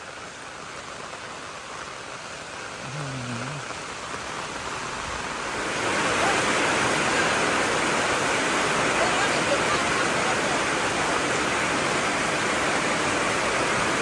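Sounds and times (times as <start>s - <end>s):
heavy rain pouring: 0.0s - 14.0s
low voice-like sound: 2.8s - 3.7s.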